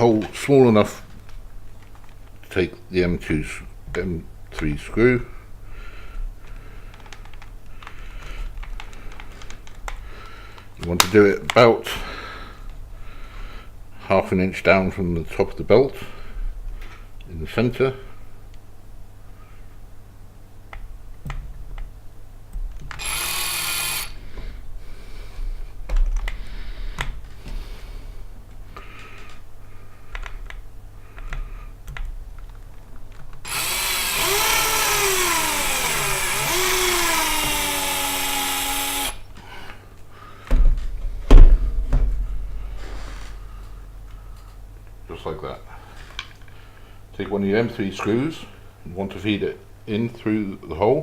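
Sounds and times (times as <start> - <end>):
power drill drilling: 23.0 - 24.2, 33.4 - 39.2.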